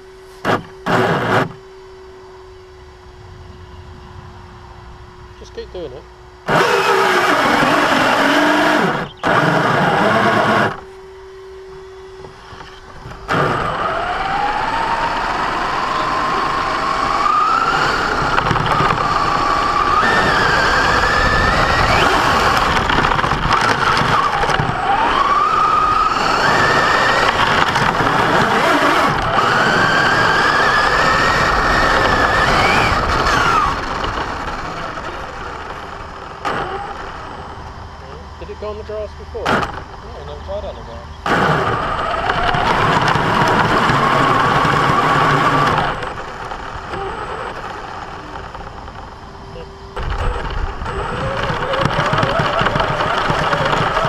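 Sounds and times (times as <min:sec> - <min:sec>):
toy truck drivetrain grinding: 0:00.0 - 0:01.6, 0:06.4 - 0:10.9, 0:12.4 - 0:37.6, 0:41.2 - 0:49.2, 0:50.0 - 0:54.0
electric motor whine: 0:00.0 - 0:54.0.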